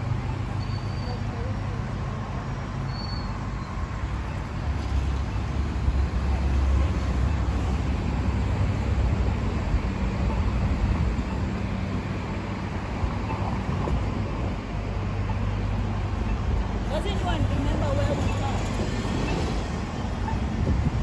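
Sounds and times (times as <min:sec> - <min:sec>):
road traffic rumble: 0:00.0 - 0:21.0.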